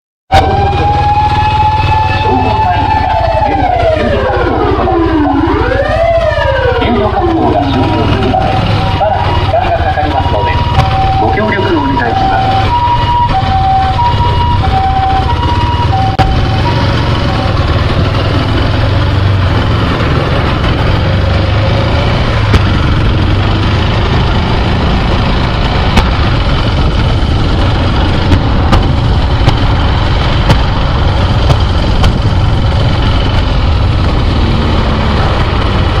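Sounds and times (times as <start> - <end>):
two-tone siren: 0.3 - 18.9
motorcycle engine rumbling: 0.3 - 36.0
wind and road noise: 0.3 - 36.0.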